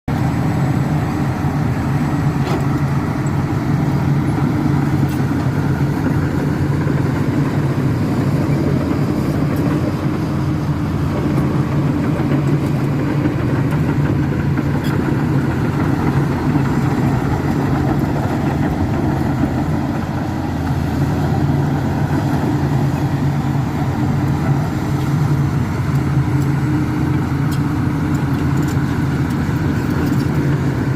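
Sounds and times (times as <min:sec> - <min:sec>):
bulldozer diesel engine running: 0:00.1 - 0:30.9.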